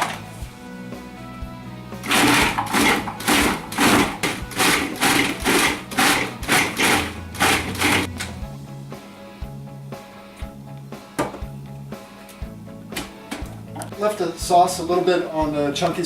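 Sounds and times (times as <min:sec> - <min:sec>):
blender pulsing: 0:02.0 - 0:08.2.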